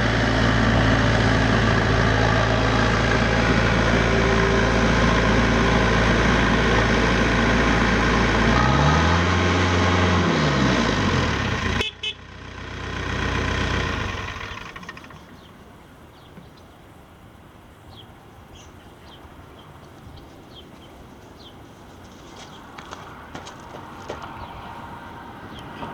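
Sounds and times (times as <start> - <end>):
diesel engine running and revving: 0.0 - 15.5.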